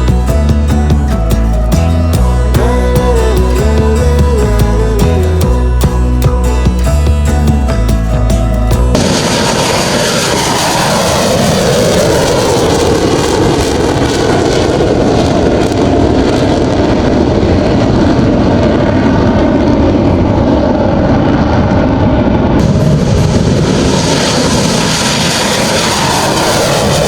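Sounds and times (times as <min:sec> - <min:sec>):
aircraft flying past: 0:09.0 - 0:15.3, 0:18.1 - 0:27.0.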